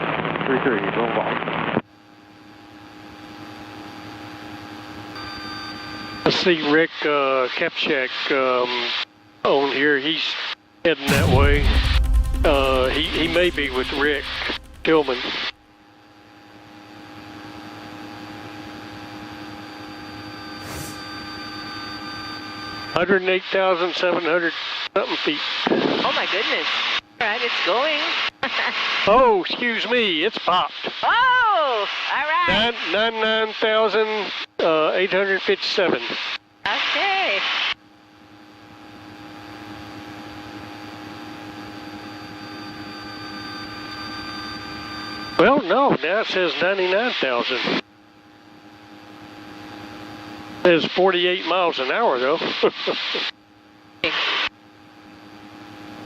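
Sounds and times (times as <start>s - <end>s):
brief rush of noise: 11.1s - 15.5s
aircraft engine drone in cabin: 37.8s - 45.5s, 53.3s - 56.0s.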